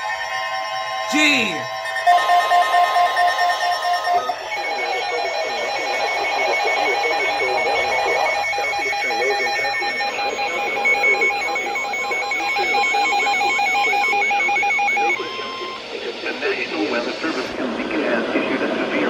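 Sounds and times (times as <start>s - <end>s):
noisy radio background: 4.2s - 19.0s.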